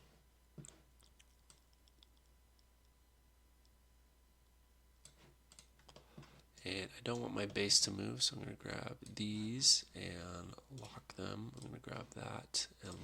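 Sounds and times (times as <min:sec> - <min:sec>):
computer mouse clicks: 0:00.6 - 0:03.0, 0:05.0 - 0:06.4.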